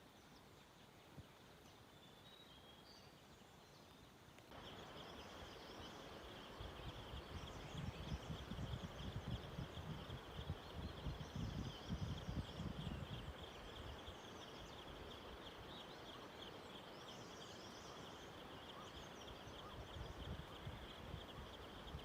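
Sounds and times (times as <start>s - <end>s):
wind rumble on microphone: 6.4s - 15.9s, 19.3s - 22.0s.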